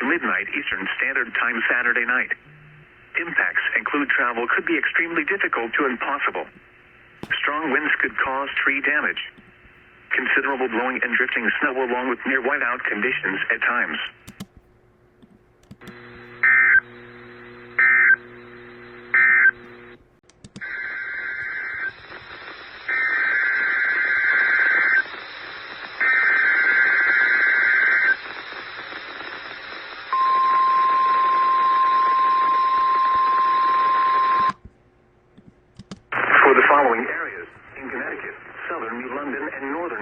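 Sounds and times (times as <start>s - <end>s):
radio hiss: 0.0s - 14.2s, 20.6s - 30.3s, 36.1s - 40.0s.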